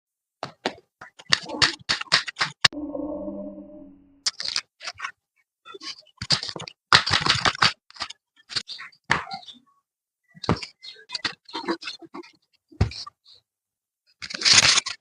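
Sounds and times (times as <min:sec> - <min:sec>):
brief ringing: 0:02.8 - 0:04.2.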